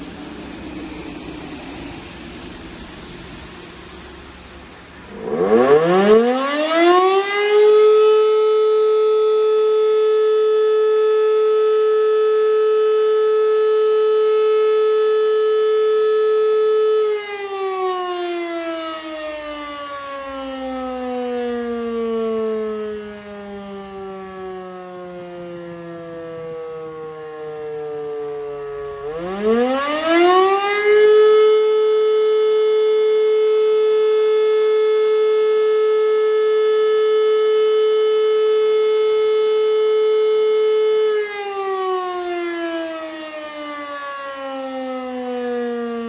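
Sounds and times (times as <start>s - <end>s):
civil defence siren: 0.0s - 46.0s.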